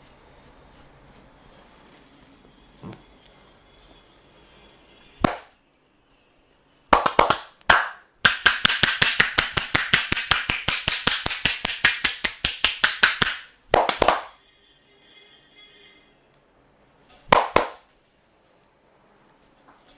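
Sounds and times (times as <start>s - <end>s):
hands slapping body in massage: 5.2s - 5.5s, 6.9s - 14.4s, 17.3s - 17.9s.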